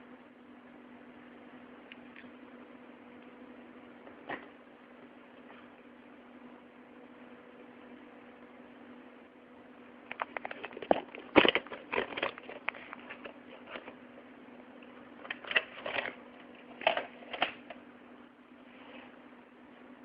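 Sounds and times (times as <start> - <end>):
faint steady hum: 0.0 - 20.0
plastic packaging crinkling: 10.1 - 13.9.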